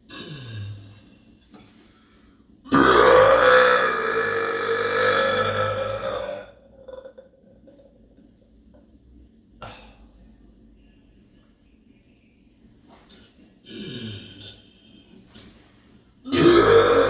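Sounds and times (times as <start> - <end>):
loud long burp: 0.1 - 0.9, 2.7 - 7.9, 16.3 - 17.0.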